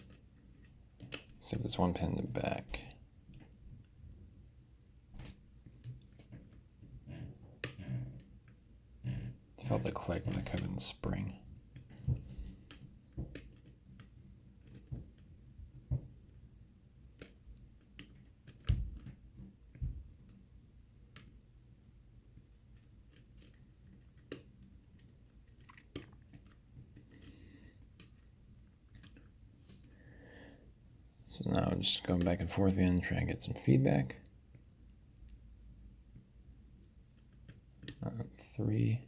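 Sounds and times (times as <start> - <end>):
lock pick clicking and scraping: 0.0 - 1.4, 12.2 - 15.3, 17.2 - 19.1, 22.7 - 27.4, 28.0 - 28.4.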